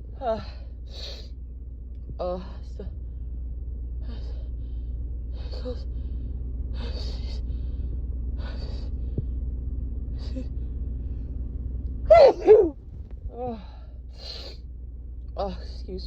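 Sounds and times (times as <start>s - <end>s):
woman sneezing: 12.1s - 12.8s.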